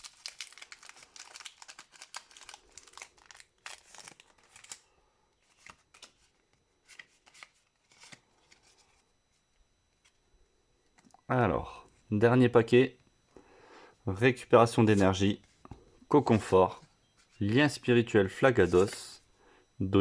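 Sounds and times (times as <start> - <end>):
trading cards and packaging crinkling: 0.0 - 9.0.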